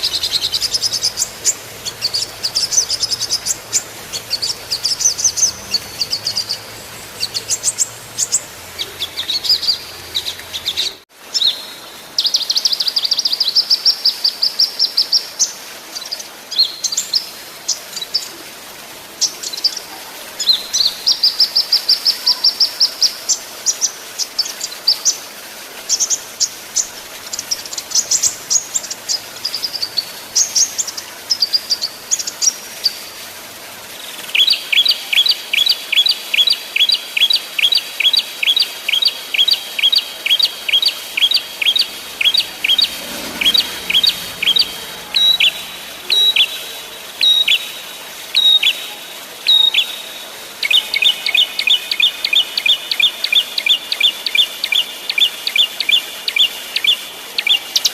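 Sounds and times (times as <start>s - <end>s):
bird trill: 0.0s - 11.0s, 34.4s - 48.9s
songbirds chirping: 0.0s - 18.3s, 19.0s - 57.9s
bird whistling downward notes: 34.4s - 48.8s.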